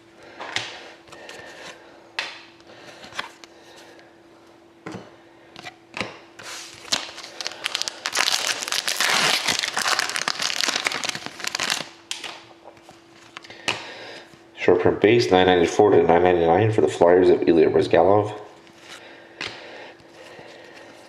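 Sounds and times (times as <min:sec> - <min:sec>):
card pack wrapper crinkling: 0:06.6 - 0:12.4.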